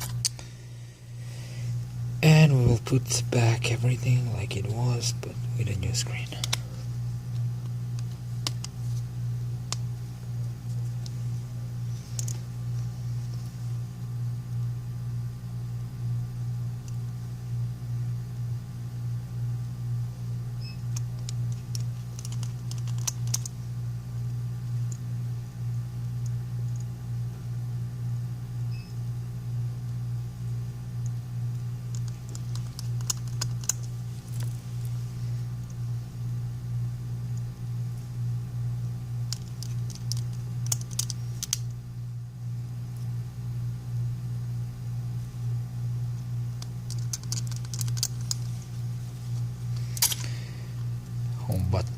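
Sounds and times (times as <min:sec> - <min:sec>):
steady low hum: 0:00.0 - 0:51.9
small clicks and taps of tools: 0:31.9 - 0:34.6.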